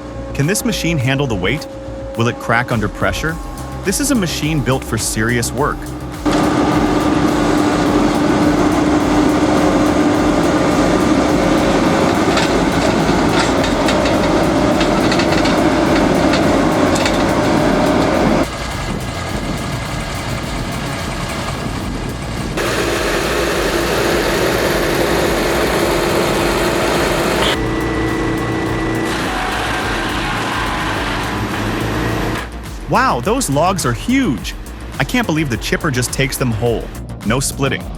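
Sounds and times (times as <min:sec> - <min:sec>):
heavy diesel machinery running: 0:03.4 - 0:32.8.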